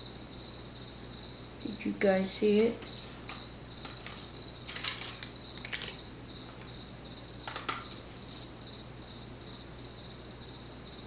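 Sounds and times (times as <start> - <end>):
cricket chirping: 0.0 - 11.0
metallic clicks and rattles: 2.6 - 6.7.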